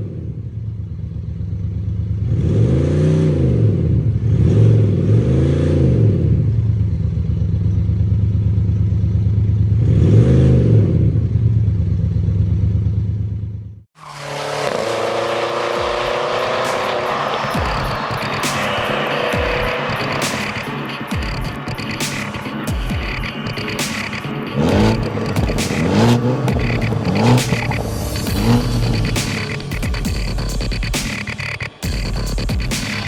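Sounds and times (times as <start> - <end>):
engine revving: 2.1 - 7.1, 9.4 - 12.9, 14.0 - 33.0
diesel engine idling: 6.6 - 9.8.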